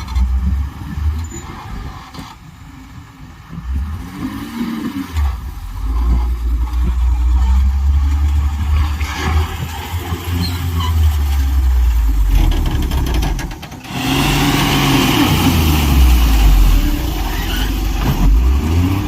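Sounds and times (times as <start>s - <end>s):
heavy diesel engine revving: 3.4s - 19.0s.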